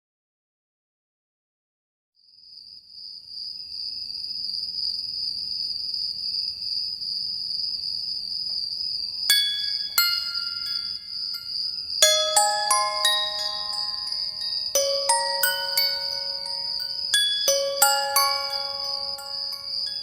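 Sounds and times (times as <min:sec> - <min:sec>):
crickets chirping: 0:02.6 - 0:20.0
glockenspiel bell notes: 0:09.3 - 0:20.0.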